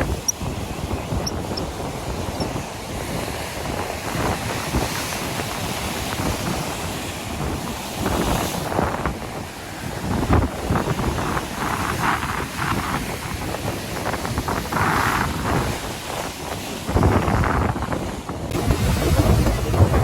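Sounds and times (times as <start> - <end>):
wind buffeting microphone: 0.0 - 20.0
sea swell surging against rocks: 16.8 - 20.0.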